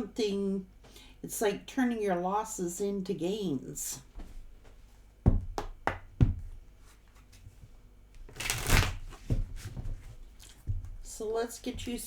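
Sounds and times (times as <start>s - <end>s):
cards shuffling: 8.3s - 9.2s.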